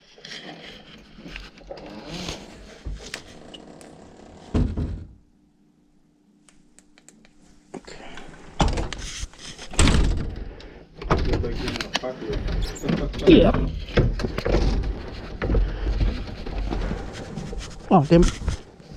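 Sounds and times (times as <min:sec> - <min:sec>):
faint steady hum: 0:00.0 - 0:12.8
clicks: 0:06.5 - 0:07.4
rustling handling noise: 0:13.8 - 0:18.9.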